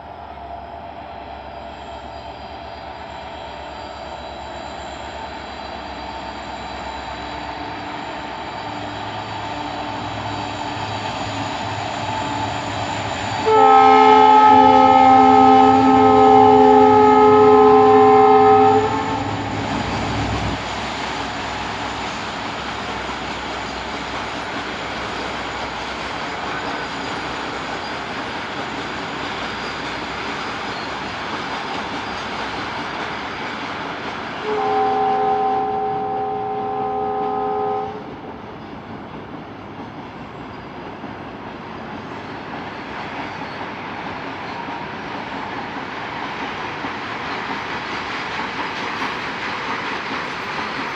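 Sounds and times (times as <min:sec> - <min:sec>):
train running noise: 0:00.0 - 0:50.9
locomotive horn blast: 0:13.4 - 0:19.4, 0:34.4 - 0:38.0.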